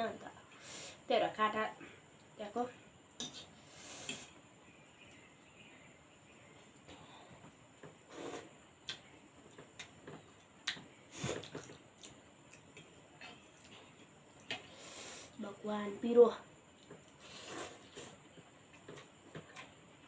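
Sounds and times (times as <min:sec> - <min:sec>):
slurping noodle soup: 0:08.0 - 0:08.5, 0:17.2 - 0:18.2
chewing: 0:08.3 - 0:14.7.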